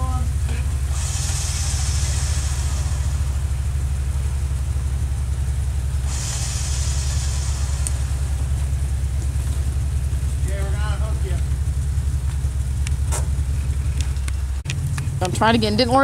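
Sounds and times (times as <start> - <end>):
engine low rumble: 0.0 - 16.0
hiss: 0.8 - 5.2, 5.9 - 9.1.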